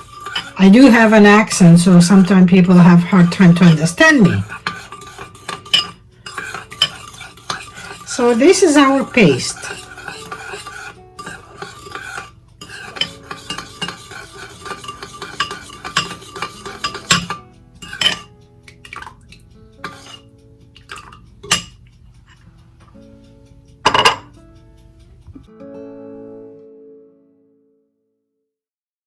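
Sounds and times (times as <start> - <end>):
spoon scraping and clinking in bowl: 0.0 - 22.4, 23.9 - 24.3.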